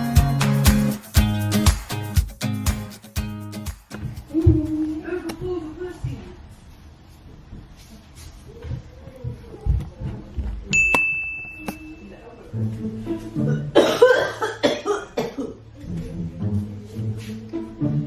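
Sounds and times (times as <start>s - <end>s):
background music: 0.0s - 4.0s, 12.4s - 14.7s, 16.1s - 18.0s
ringing tone: 10.7s - 12.4s
person coughing: 13.5s - 15.6s.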